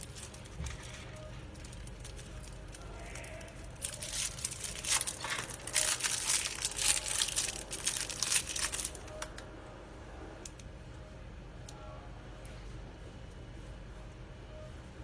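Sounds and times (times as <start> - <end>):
plastic packaging crinkling: 0.0 - 9.4.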